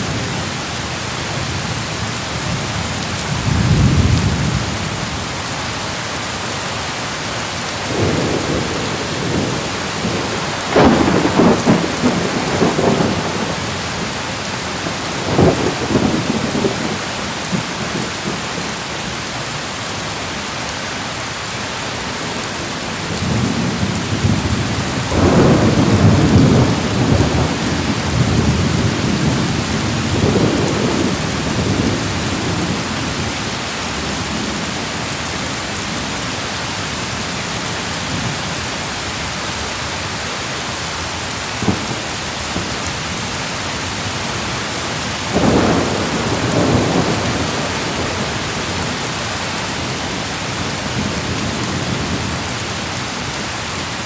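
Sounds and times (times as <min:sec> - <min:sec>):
steady rain hiss: 0:00.0 - 0:54.0
thunder rolling: 0:07.9 - 0:13.8, 0:23.1 - 0:33.3, 0:45.3 - 0:48.9.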